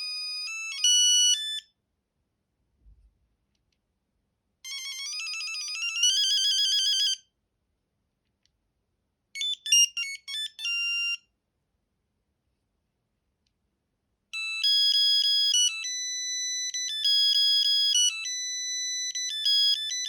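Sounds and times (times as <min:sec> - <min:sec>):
phone ringtone beeping melody: 0:00.0 - 0:01.7, 0:04.7 - 0:07.2, 0:09.4 - 0:11.2, 0:14.4 - 0:20.0.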